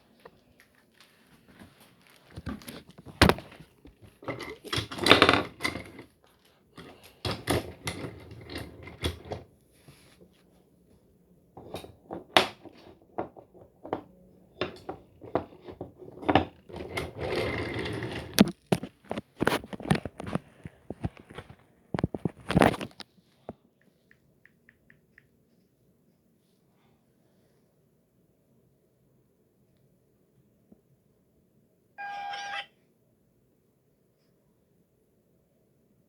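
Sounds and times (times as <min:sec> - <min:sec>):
plastic and cardboard rustling: 0:00.0 - 0:05.0, 0:18.2 - 0:23.0.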